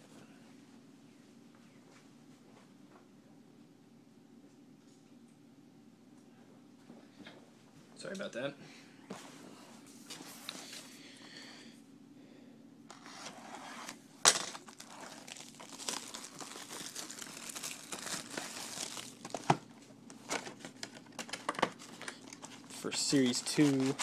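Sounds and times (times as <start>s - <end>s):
card wrappers crinkling and tearing: 14.3s - 24.0s.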